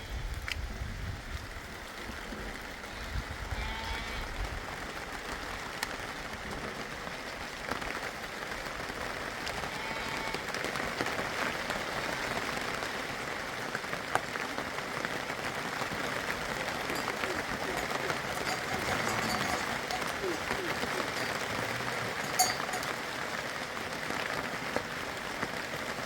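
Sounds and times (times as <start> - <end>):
rain pattering: 0.3 - 26.0
sharp drips: 16.8 - 23.1.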